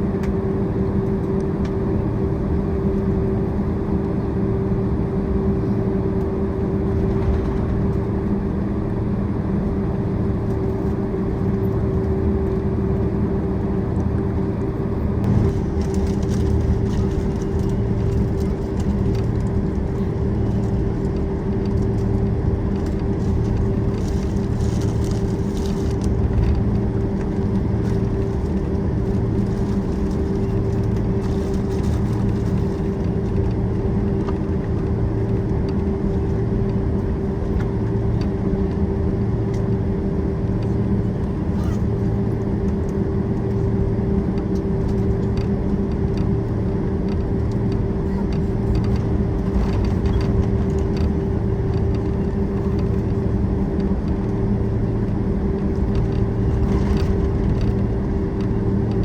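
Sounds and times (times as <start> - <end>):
aircraft cabin engine hum: 0.0 - 59.0
low beating throb: 15.2 - 35.2.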